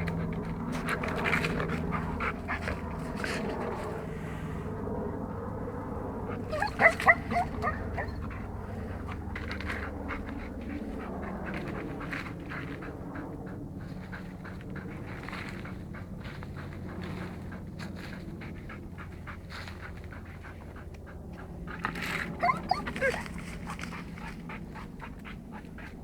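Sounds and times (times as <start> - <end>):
dog whining and yelping: 6.3 - 10.1, 22.2 - 24.3.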